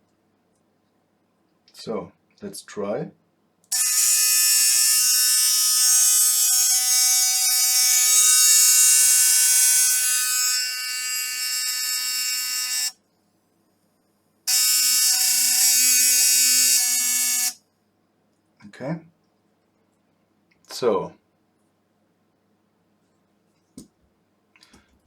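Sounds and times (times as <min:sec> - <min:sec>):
electric toothbrush buzzing: 0:03.7 - 0:13.0, 0:14.5 - 0:17.6.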